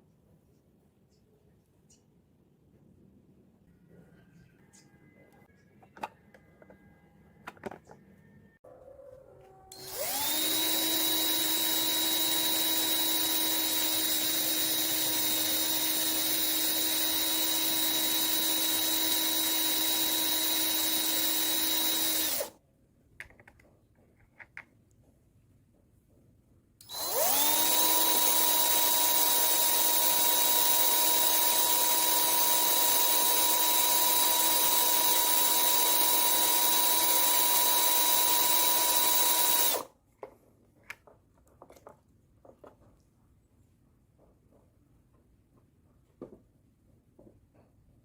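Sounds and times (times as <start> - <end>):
small electric motor whining: 9.7 - 22.6, 26.8 - 39.9.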